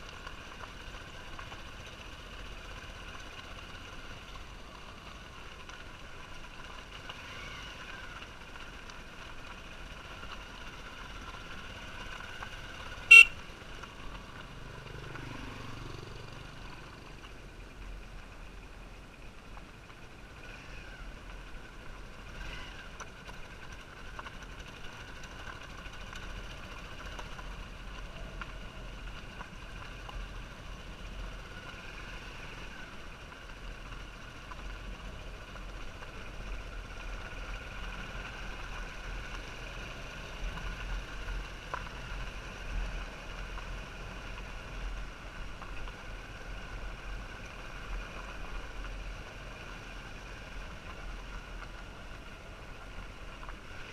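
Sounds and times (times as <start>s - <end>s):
motorbike engine running: 0.2s - 16.9s.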